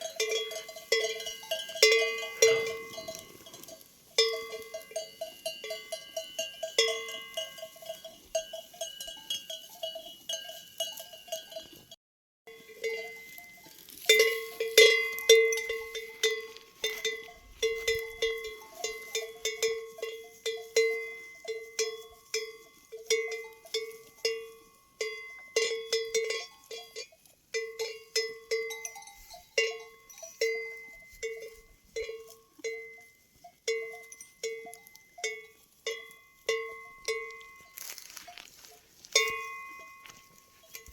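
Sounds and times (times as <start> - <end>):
sheep bell clanging: 0.0 - 40.9
louder lower bell ringing: 39.2 - 40.9.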